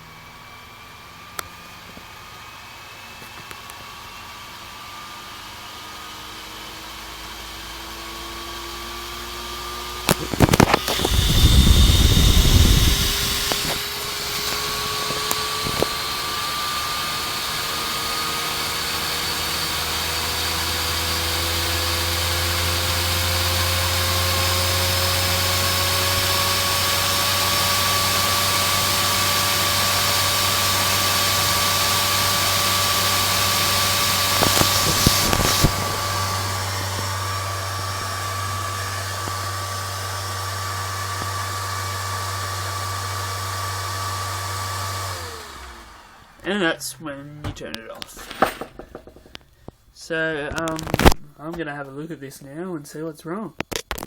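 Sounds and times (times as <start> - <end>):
computer cooling fan whine rising: 0.0 - 47.8
knocks: 47.4 - 49.4.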